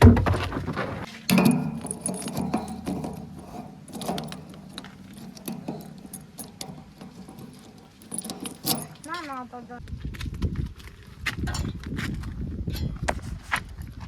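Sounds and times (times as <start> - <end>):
metallic clinks and knocks: 1.0 - 9.5.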